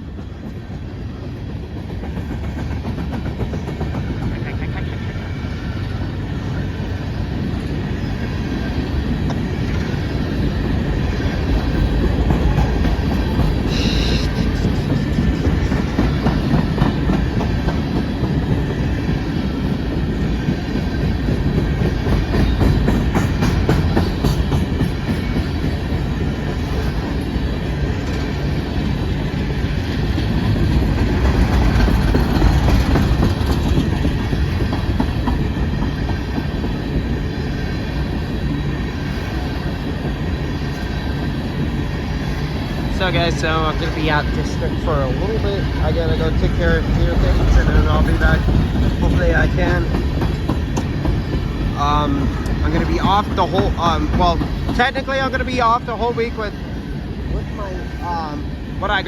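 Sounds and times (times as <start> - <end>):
train rumbling past: 0.0 - 59.0
wheels clacking over rails: 0.1 - 4.8, 8.5 - 56.7
high-pitched wheel squeal: 13.7 - 14.9.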